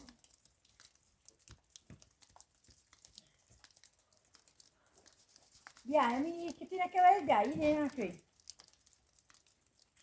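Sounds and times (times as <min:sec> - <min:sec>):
faint small clicks and rustles: 0:00.0 - 0:10.0.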